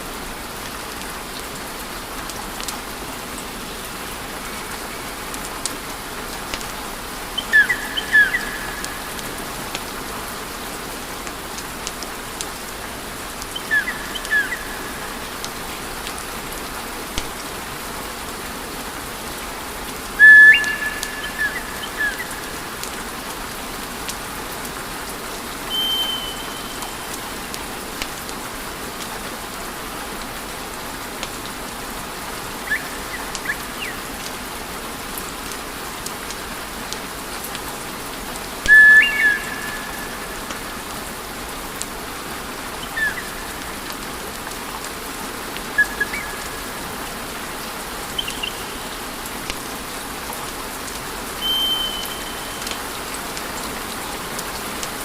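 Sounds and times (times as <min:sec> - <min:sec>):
high whistling tones: 0:38.7 - 0:40.2, 0:51.4 - 0:52.6.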